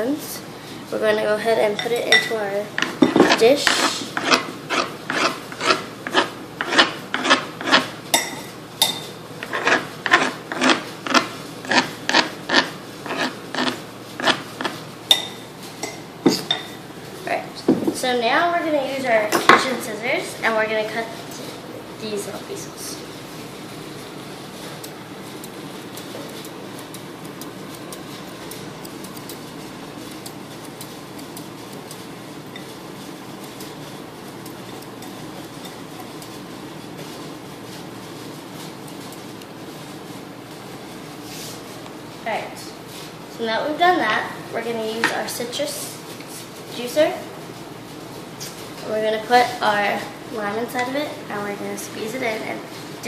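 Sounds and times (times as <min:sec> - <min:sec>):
knife cutting on board: 0:02.8 - 0:07.9, 0:09.4 - 0:14.8
scissors snipping food: 0:24.8 - 0:29.4, 0:30.1 - 0:32.0.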